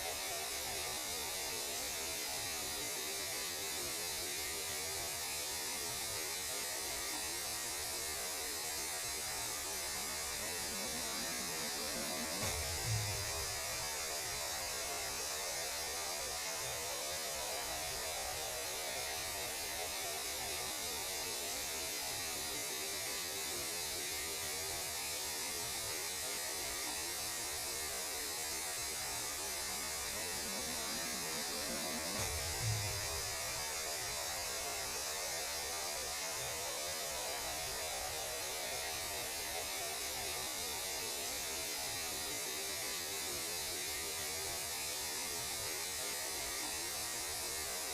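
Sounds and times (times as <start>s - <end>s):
static hiss: 0.0s - 47.9s
low hum: 11.8s - 13.8s.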